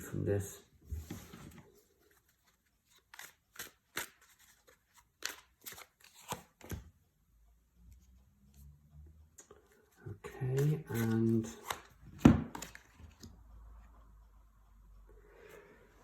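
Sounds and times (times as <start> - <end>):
cards being handled: 1.0 - 6.9, 9.7 - 13.4
cards snapping: 3.0 - 6.8, 10.6 - 13.2.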